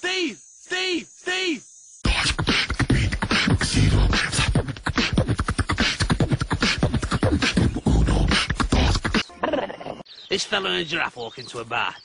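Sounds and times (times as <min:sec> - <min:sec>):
human beatboxing: 0:02.0 - 0:09.3.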